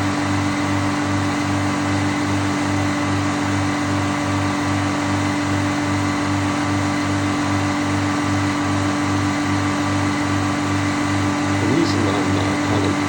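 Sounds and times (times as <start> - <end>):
sawmill engine throbbing: 11.3 - 13.0.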